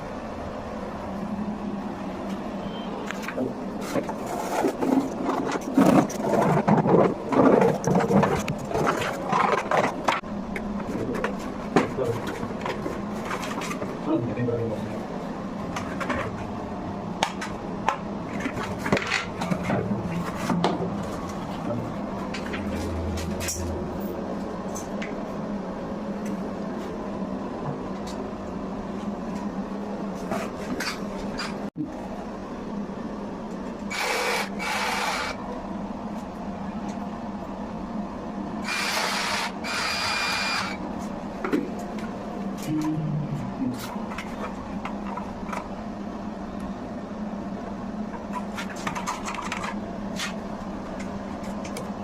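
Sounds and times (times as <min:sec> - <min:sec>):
steady low hum: 0:00.0 - 0:52.0
electric drill whining: 0:33.9 - 0:35.4, 0:38.6 - 0:40.8.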